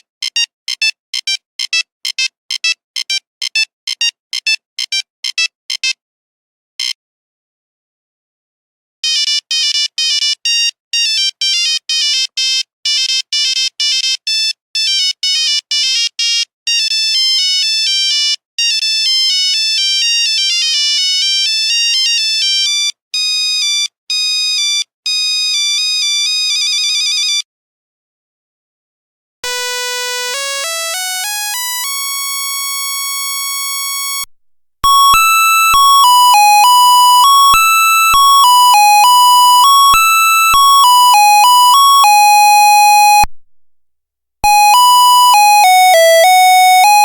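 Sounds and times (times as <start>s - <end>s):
monophonic ringtone melody: 34.1s - 43.3s, 44.4s - 47.0s.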